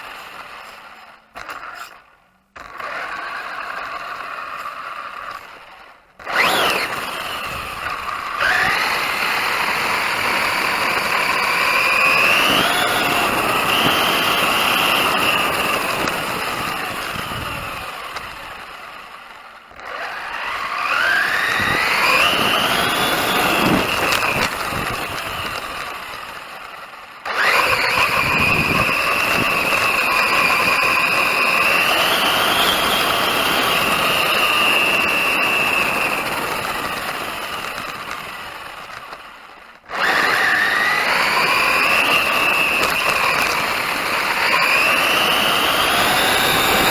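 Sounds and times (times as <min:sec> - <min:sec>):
rc car electric motor whining: 0:00.0 - 0:46.9.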